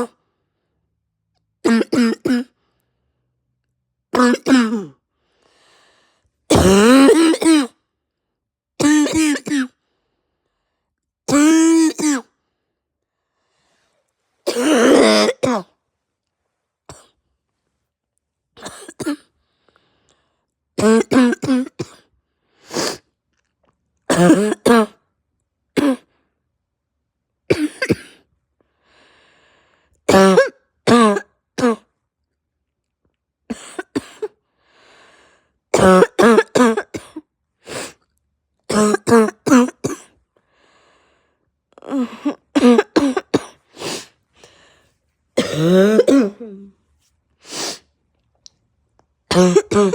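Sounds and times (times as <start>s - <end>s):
person coughing hard: 1.7s - 2.6s, 4.2s - 5.0s, 6.5s - 7.8s, 8.8s - 9.8s, 11.3s - 12.3s, 14.5s - 15.7s, 18.6s - 19.3s, 20.8s - 22.1s, 24.1s - 25.0s, 25.8s - 26.1s, 27.5s - 28.2s, 30.1s - 31.9s, 33.5s - 34.4s, 35.7s - 37.3s, 38.7s - 40.2s, 41.9s - 43.6s, 45.4s - 46.6s, 49.3s - 49.9s
faint breaths: 5.1s - 6.4s, 12.4s - 14.4s, 28.6s - 30.0s, 34.5s - 35.6s, 40.4s - 42.3s, 43.6s - 45.1s.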